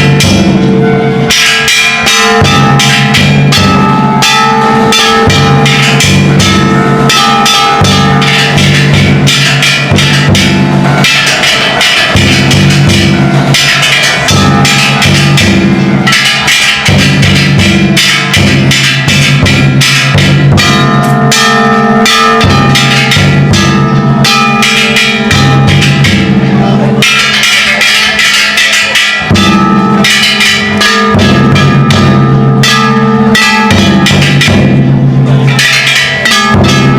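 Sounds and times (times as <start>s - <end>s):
big drum beaten rapidly: 0.0s - 36.9s
gongs clanging: 0.0s - 36.9s.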